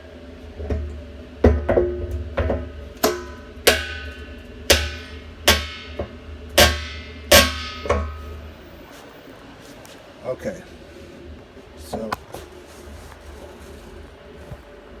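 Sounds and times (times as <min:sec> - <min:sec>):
sharp ringing knocks: 0:03.0 - 0:08.4.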